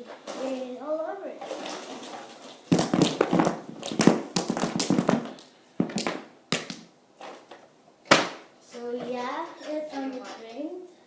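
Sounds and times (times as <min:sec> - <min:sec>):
plastic tubes clattering on floor: 0:01.4 - 0:07.6.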